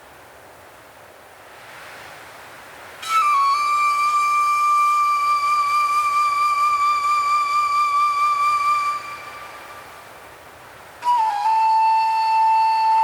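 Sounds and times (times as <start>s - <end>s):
soft wind-like hiss: 0.0s - 13.0s
flute-like long held note: 3.0s - 10.2s, 11.0s - 13.0s.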